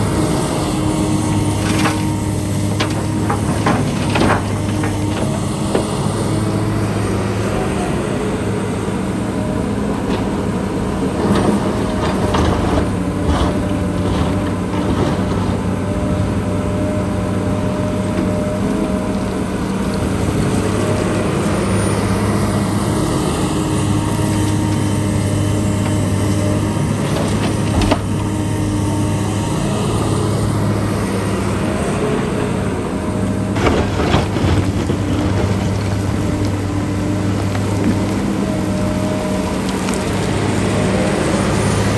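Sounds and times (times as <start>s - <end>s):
heavy machinery engine running: 0.0s - 41.9s.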